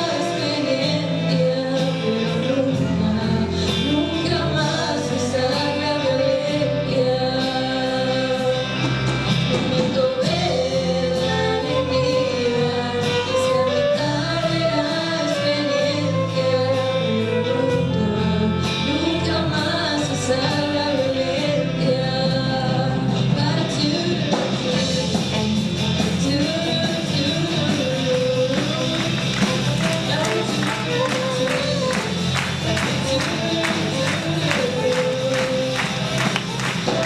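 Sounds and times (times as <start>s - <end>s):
live rock band playing: 0.0s - 37.0s.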